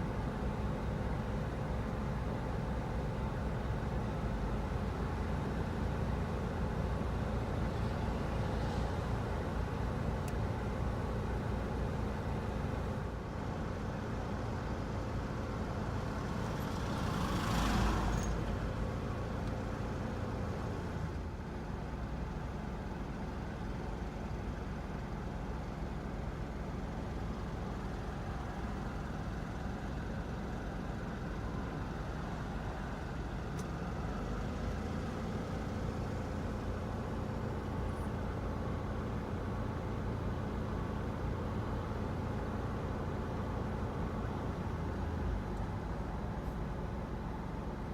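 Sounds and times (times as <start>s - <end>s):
engine and road rumble: 0.0s - 47.9s.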